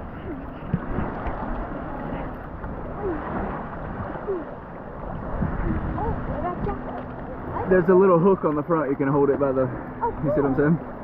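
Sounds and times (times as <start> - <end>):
wind on microphone: 0.0 - 8.1
waves washing in shallows: 0.0 - 11.0.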